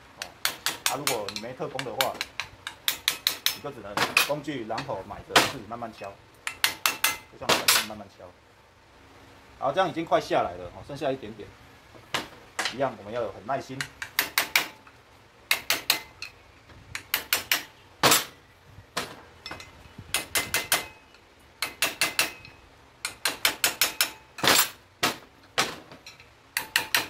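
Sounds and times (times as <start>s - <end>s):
hammer tapping metal: 0.2s - 5.6s, 6.4s - 7.9s, 13.8s - 14.9s, 15.5s - 18.4s, 19.4s - 24.8s, 26.1s - 27.0s.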